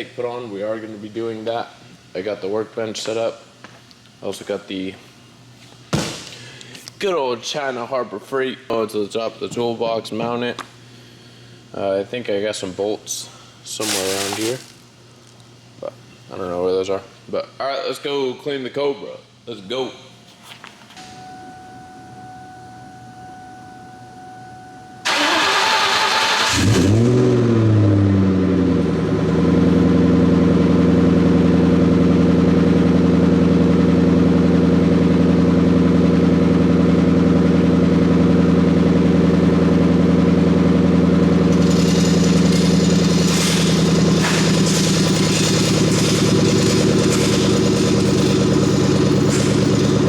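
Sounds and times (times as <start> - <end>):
car engine revving and idling: 25.4 - 50.0.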